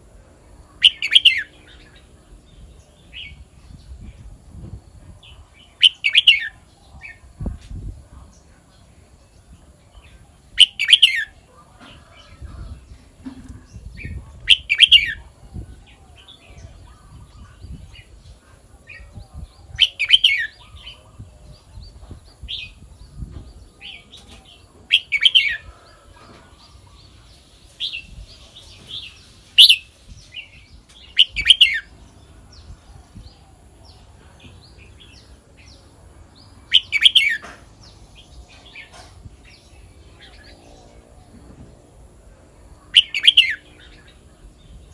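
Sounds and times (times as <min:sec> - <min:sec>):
bird singing whistled phrases: 0:43.0 - 0:43.6.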